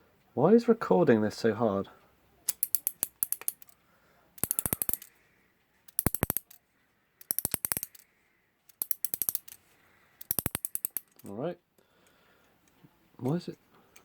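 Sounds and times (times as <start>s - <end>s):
clock ratchet clicking while winding: 2.5s - 3.7s, 4.4s - 5.1s, 5.9s - 6.6s, 7.2s - 8.0s, 8.7s - 9.6s, 10.2s - 11.2s.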